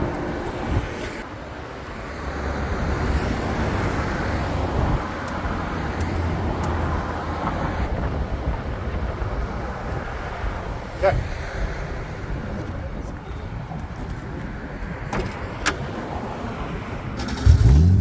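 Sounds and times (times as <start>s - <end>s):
road noise: 0.0s - 18.0s.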